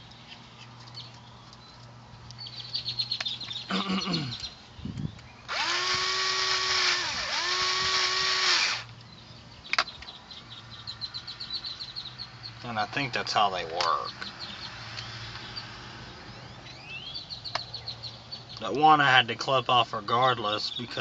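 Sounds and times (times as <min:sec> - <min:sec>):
birds chirping: 0:00.0 - 0:21.0
power drill running: 0:05.5 - 0:08.9.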